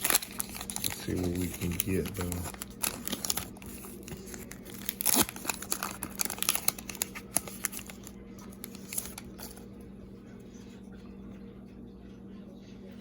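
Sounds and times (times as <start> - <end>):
wrapper crinkling and tearing: 0.0 - 9.6.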